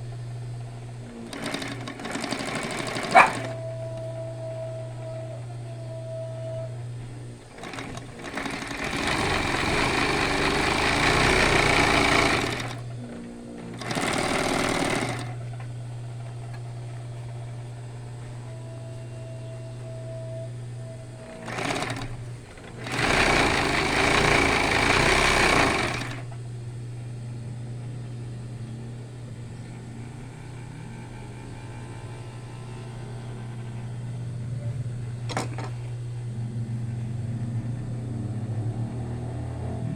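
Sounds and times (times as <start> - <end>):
sewing machine stitching: 0.0 - 5.1, 6.0 - 26.4, 35.1 - 35.9
sewing machine motor hum: 0.0 - 39.9.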